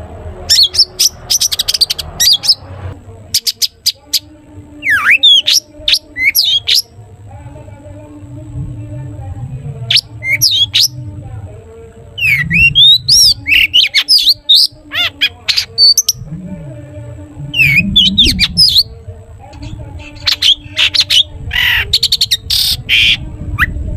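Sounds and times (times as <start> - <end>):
steady low hum: 0.0 - 23.9
bird singing rapid varied notes: 0.5 - 2.6, 3.4 - 6.9, 9.9 - 11.0, 12.2 - 16.3, 17.5 - 19.0, 19.6 - 23.2.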